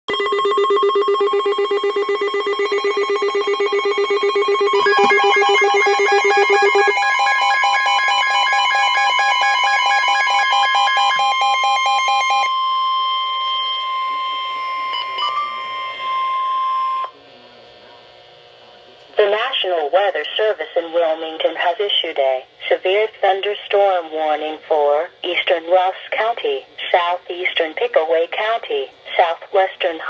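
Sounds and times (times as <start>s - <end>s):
pulsing electronic alarm: 0.1s - 17.2s
steady high tone: 0.1s - 17.2s.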